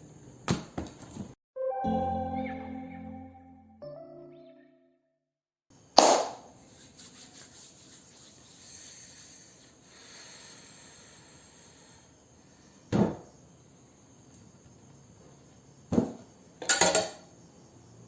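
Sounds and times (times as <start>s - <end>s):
sharp knock: 6.0s - 6.4s.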